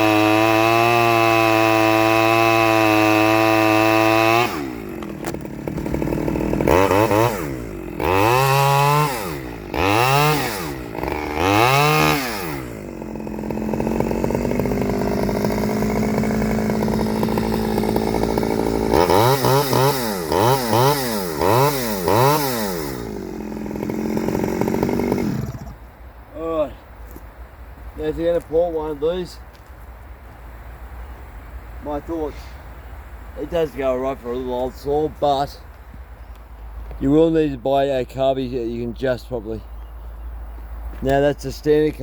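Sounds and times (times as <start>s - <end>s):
chainsaw revving and idling: 0.0s - 26.0s.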